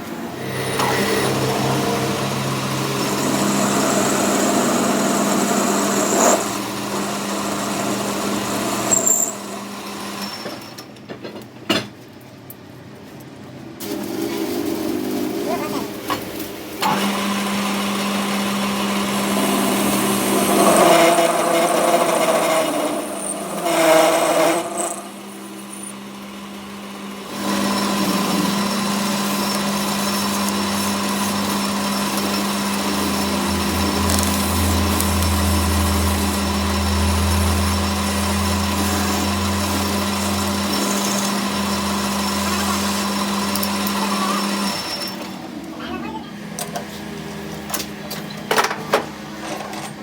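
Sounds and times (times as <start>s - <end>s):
power tool motor humming: 0.3s - 10.4s, 16.8s - 45.4s.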